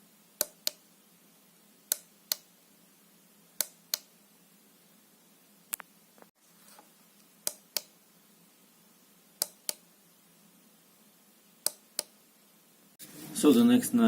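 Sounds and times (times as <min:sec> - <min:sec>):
sharp clicks: 0:01.9 - 0:02.5, 0:03.6 - 0:04.1, 0:07.4 - 0:08.0, 0:09.4 - 0:09.8, 0:11.6 - 0:12.2.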